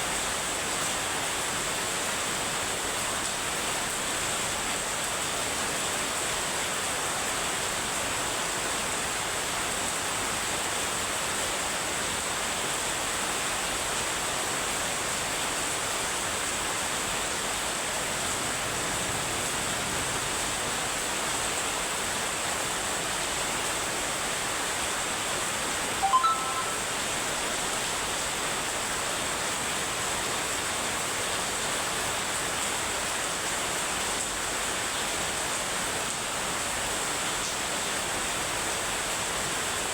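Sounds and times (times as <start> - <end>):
heavy rain falling: 0.1 - 25.8, 27.9 - 39.9
brief tonal sound: 26.0 - 27.2
thin high tone: 26.0 - 27.2.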